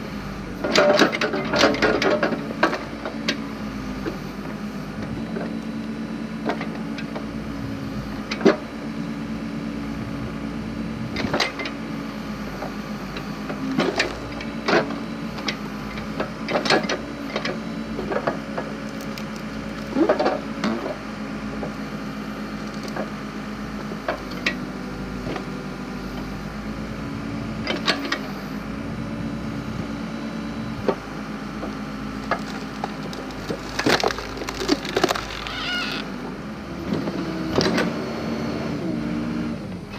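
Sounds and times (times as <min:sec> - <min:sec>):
backhoe engine running: 0:00.0 - 0:39.9
wood cracking and snapping: 0:13.7 - 0:14.4, 0:18.3 - 0:20.4, 0:22.6 - 0:23.2, 0:31.7 - 0:36.2.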